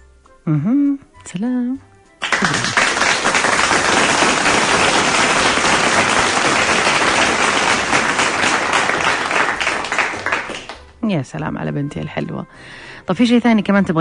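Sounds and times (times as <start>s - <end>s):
crowd applause: 2.2s - 10.8s.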